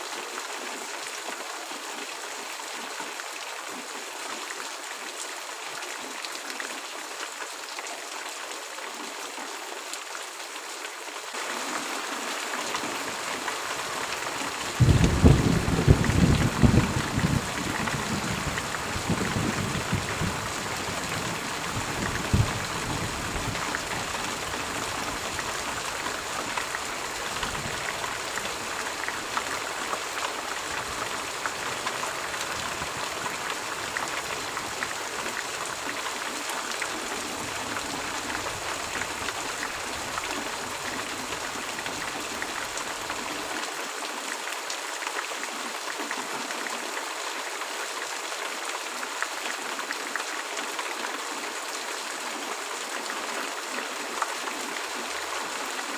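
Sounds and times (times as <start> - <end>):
heavy rain pouring: 0.0 - 55.9
thunderclap rumbling: 14.8 - 20.5, 21.8 - 23.6.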